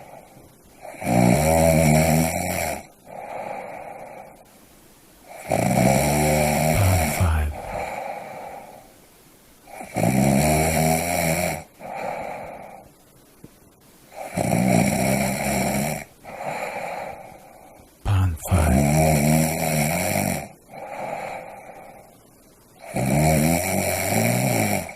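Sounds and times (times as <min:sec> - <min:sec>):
person snoring: 0:05.3 - 0:08.8, 0:18.1 - 0:21.7, 0:22.8 - 0:24.9.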